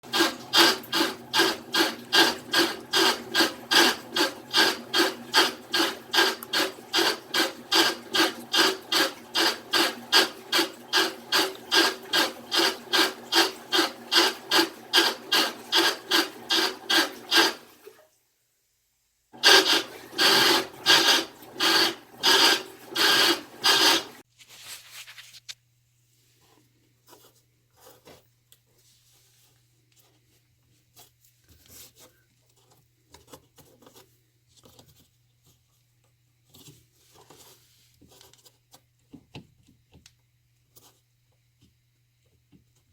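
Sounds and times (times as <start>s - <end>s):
washing machine grinding: 0.0s - 18.0s, 19.4s - 24.2s.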